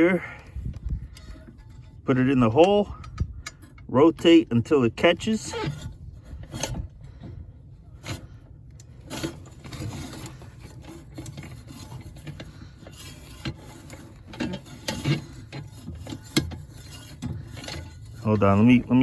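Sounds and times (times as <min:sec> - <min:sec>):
rubbing and scraping: 0:00.0 - 0:19.0.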